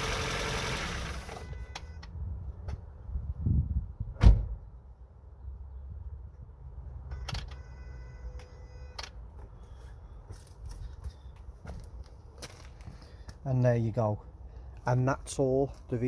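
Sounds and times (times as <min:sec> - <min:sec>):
engine idling: 0:00.0 - 0:01.4
car door shutting: 0:04.2 - 0:04.6.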